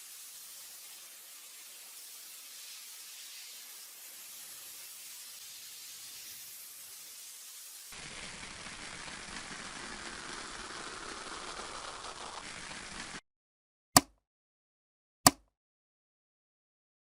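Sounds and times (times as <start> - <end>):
steady hiss: 0.0 - 13.2.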